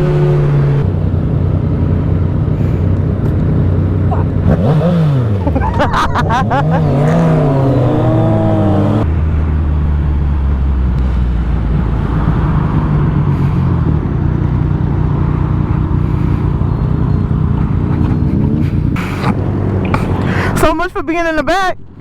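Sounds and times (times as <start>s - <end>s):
motorcycle engine running: 0.0s - 20.5s
wind rushing over microphone: 4.4s - 19.9s.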